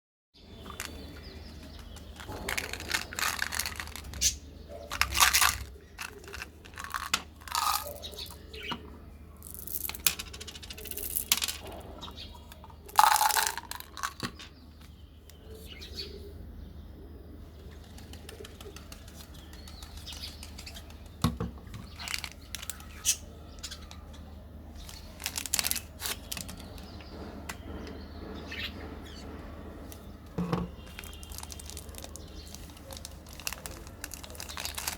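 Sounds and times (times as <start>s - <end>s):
crinkling: 0.6s - 8.4s, 9.4s - 14.4s, 21.8s - 27.2s, 29.9s - 34.9s.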